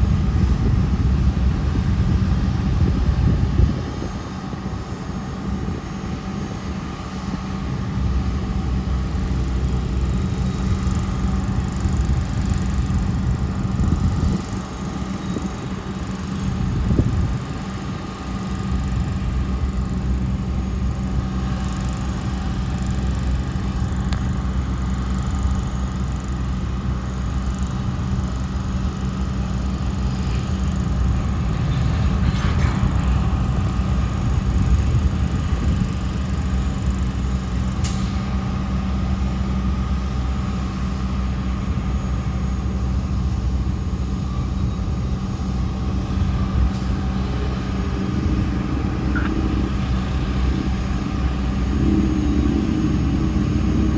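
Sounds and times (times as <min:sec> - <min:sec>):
train wheels rumbling on rails: 0:00.0 - 0:53.9
faint steady hum: 0:41.6 - 0:53.9.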